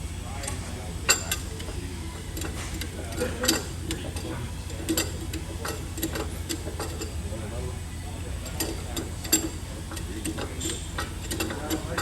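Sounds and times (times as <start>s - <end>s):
steady low hum: 0.0s - 12.0s
light metallic clicks and clinks: 2.4s - 7.2s, 8.4s - 12.0s.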